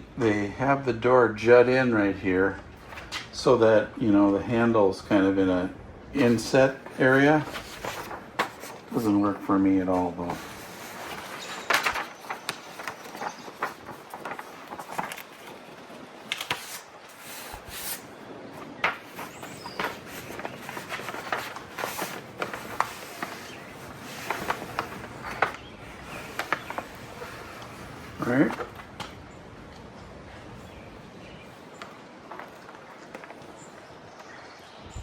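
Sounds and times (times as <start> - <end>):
hands handling parts: 10.2 - 29.9.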